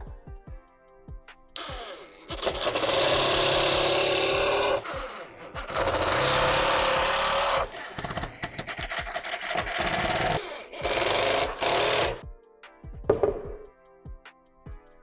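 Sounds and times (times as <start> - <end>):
music: 0.0 - 15.0
power tool running: 1.6 - 12.2
rapid rattling strokes: 1.6 - 12.2.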